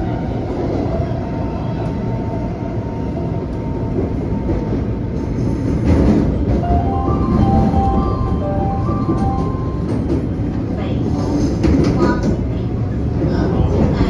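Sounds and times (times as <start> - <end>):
train wheels and motors rumbling: 0.0 - 14.0
short tones at changing pitches: 6.6 - 10.0.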